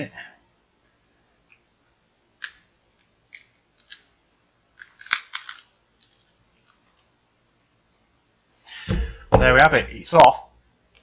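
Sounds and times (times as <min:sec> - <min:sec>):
glass cracking and clicking: 0:04.8 - 0:05.7.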